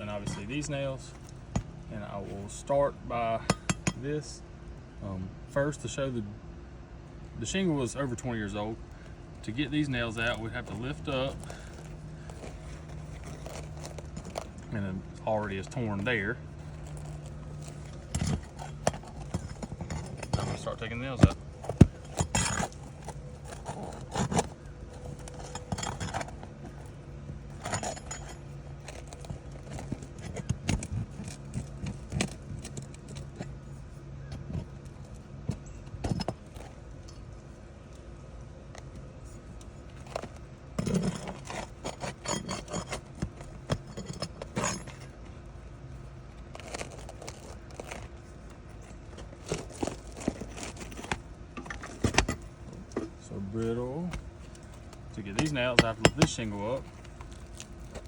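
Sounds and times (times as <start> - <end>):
steady low hum: 0.0 - 58.0
metal tool prying nails: 16.8 - 26.8.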